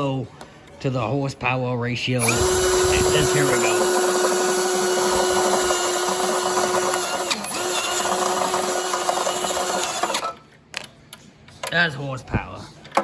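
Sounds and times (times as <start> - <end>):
electric drill boring: 2.2 - 10.2.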